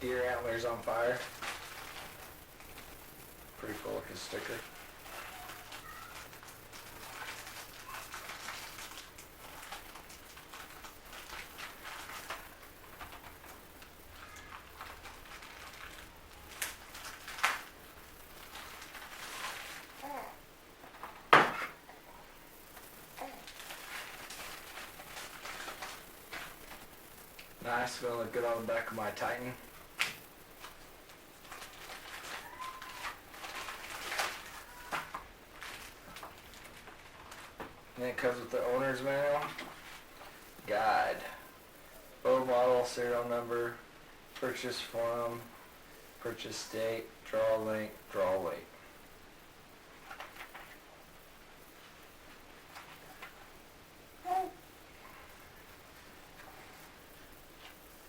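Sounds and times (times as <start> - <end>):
paper and packaging crinkling: 0.0 - 20.3, 22.6 - 41.5, 49.8 - 53.7.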